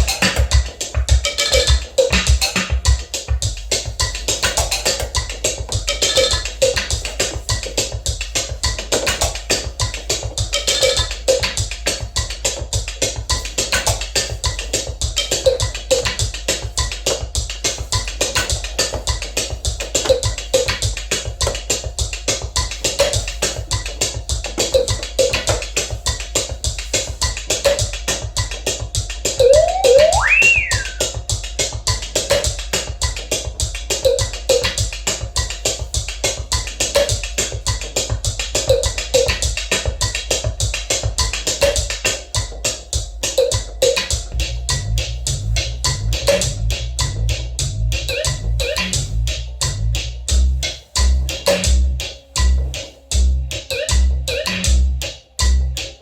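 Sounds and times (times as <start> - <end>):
mechanical sequencer clicking rhythm: 0.0 - 31.3
pitch swooping up and down: 29.4 - 31.0.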